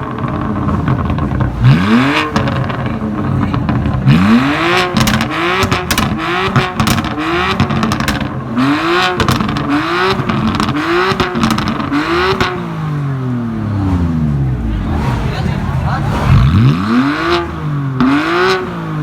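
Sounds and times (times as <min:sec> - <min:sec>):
exhaust crackles and pops: 0:00.0 - 0:12.8
car engine revving: 0:00.0 - 0:19.0.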